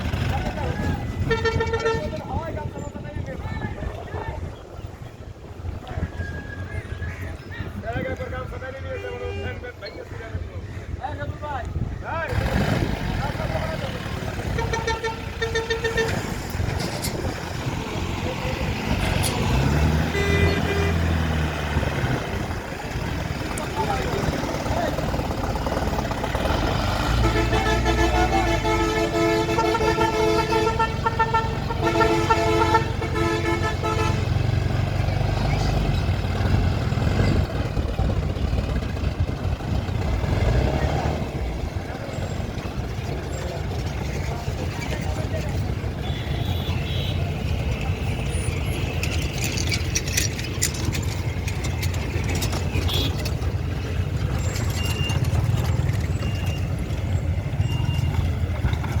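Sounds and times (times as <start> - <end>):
vehicle horn blasts: 1.2 - 2.3, 14.5 - 16.3, 20.0 - 21.2, 27.1 - 34.4, 46.0 - 47.4, 52.8 - 53.2
low engine rumble: 11.7 - 59.0.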